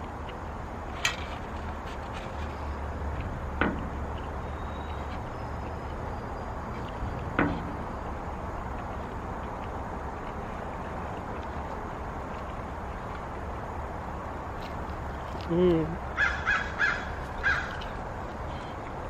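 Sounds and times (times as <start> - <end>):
sharp knocks: 7.3 - 7.8.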